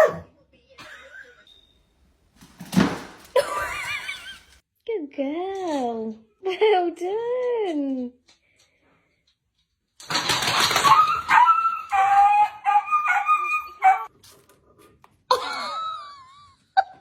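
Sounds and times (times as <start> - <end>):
dog whining and yipping: 10.8 - 14.1.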